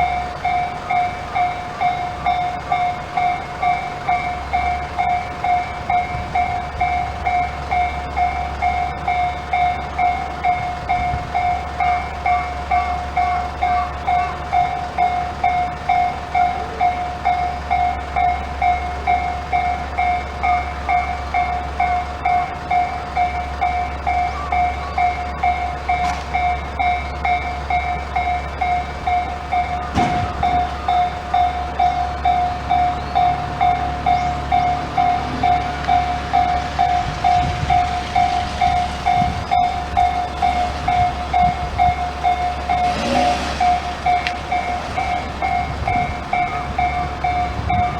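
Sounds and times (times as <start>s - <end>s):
level-crossing alarm ringing: 0.0s - 47.9s.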